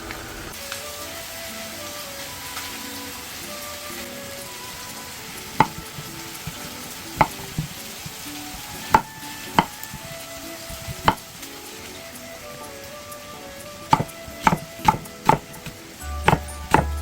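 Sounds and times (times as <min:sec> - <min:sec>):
faint background music: 0:00.0 - 0:17.0
knife chopping on cutting board: 0:05.6 - 0:11.3, 0:13.9 - 0:17.0.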